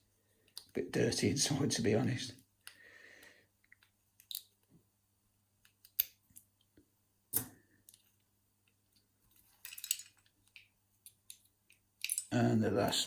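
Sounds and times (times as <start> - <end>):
lock parts clicking: 3.6 - 4.6, 5.6 - 6.5, 9.4 - 12.3.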